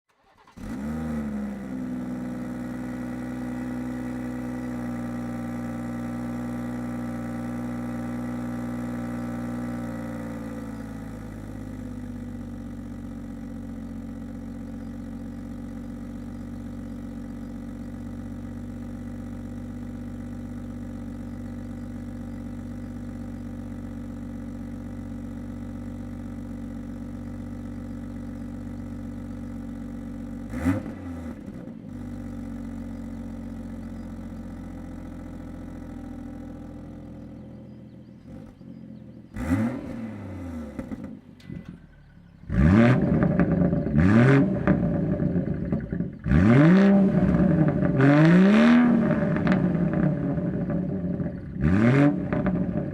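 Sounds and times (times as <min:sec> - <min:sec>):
car engine idling: 0:00.1 - 0:52.9.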